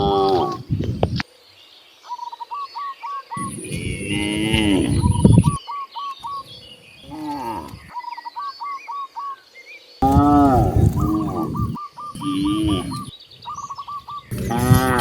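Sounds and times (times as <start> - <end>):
cattle mooing: 3.4 - 5.6, 7.1 - 7.9, 10.0 - 13.1, 14.3 - 15.0
bird calling short repeated notes: 10.0 - 15.0.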